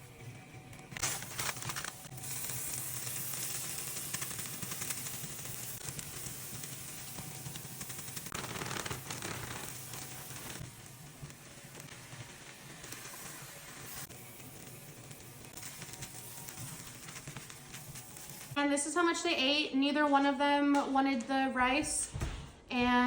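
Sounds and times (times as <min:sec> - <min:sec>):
rice sizzling in a pan: 0:01.0 - 0:18.6.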